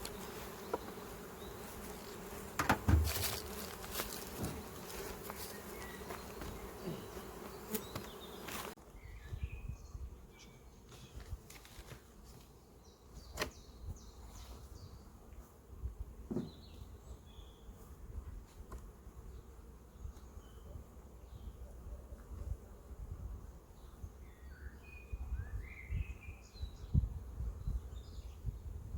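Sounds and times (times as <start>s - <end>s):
honeybees buzzing: 0.0s - 8.8s.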